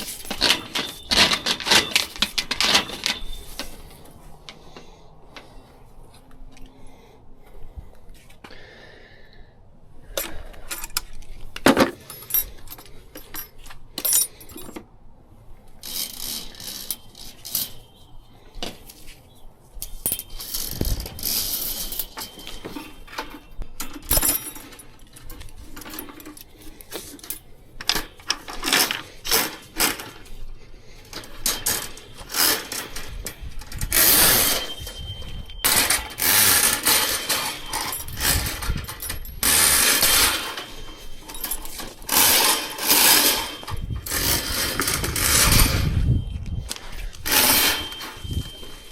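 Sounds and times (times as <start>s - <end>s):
metal tools clinking and rattling: 0.0s - 4.6s, 10.1s - 14.9s, 15.8s - 18.1s, 19.8s - 30.4s, 31.0s - 48.9s.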